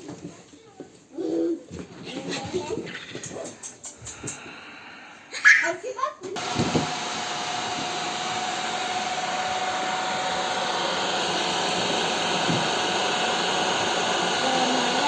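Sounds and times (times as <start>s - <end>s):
stick vacuum cleaner running: 6.4s - 15.0s.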